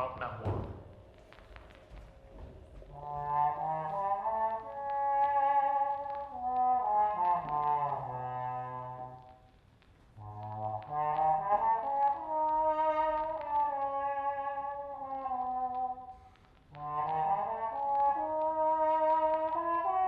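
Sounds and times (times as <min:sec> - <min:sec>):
trombone playing jazz notes: 0:02.9 - 0:09.3, 0:10.2 - 0:15.7, 0:16.7 - 0:20.0.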